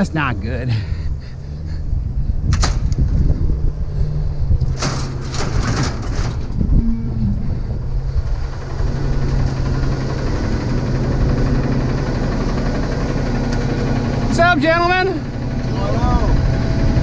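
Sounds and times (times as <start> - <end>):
vehicle engine humming: 0.0 - 17.0
sharp rattles: 2.4 - 15.5.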